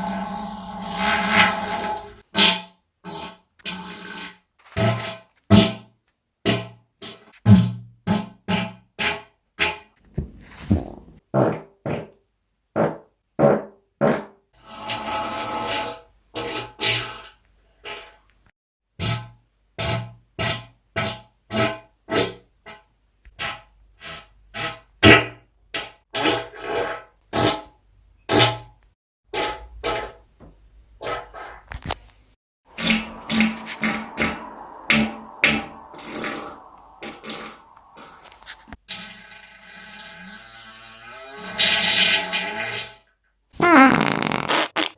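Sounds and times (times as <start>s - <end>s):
person farting: 43.6s - 44.9s.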